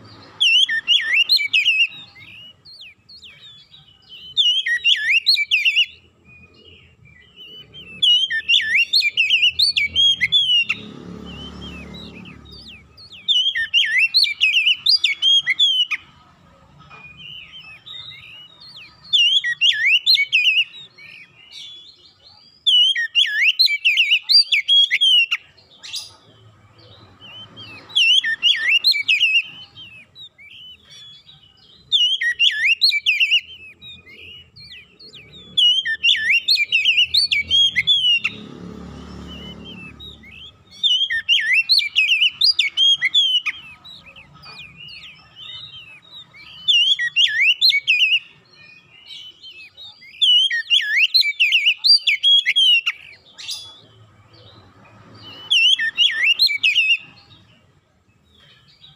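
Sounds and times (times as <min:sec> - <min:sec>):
bird singing whistled phrases: 0:00.0 - 0:16.1, 0:17.0 - 0:54.6, 0:55.2 - 0:57.6.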